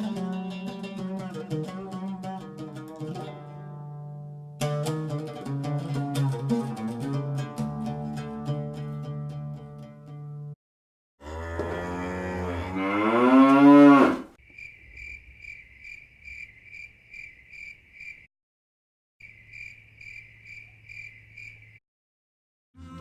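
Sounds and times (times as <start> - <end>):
cow mooing: 11.2 - 14.3
cricket chirping: 14.4 - 18.3, 19.2 - 21.8.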